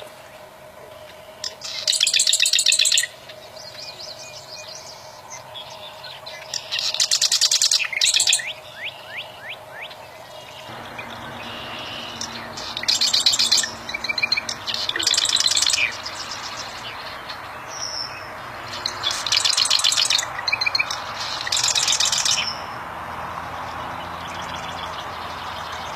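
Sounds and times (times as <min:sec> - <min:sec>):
steady background hiss: 0:00.0 - 0:22.4
bird trilling: 0:10.6 - 0:22.6.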